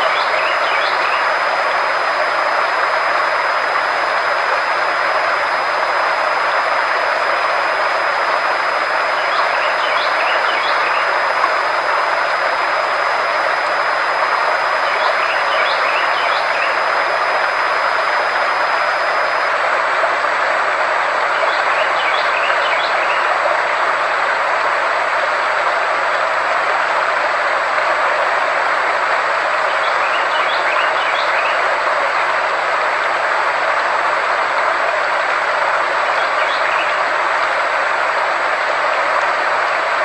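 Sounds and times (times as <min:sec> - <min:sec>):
faint chirps: 0:00.0 - 0:19.5
low hum: 0:00.0 - 0:19.6
thin high tone: 0:00.0 - 0:19.6
steady hiss: 0:00.0 - 0:21.2.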